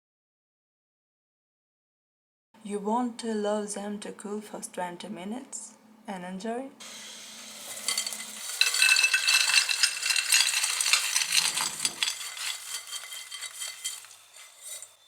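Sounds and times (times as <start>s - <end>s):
walnuts clattering against a dish: 7.3s - 15.0s.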